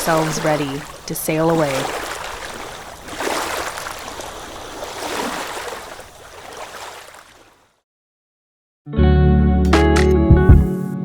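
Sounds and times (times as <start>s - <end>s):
water rushing along boat hull: 0.0s - 7.7s.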